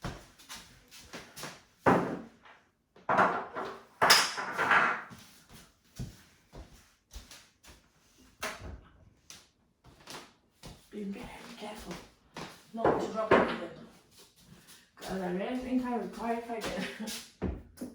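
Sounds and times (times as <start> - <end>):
objects knocking on hard surface: 3.1 - 5.2.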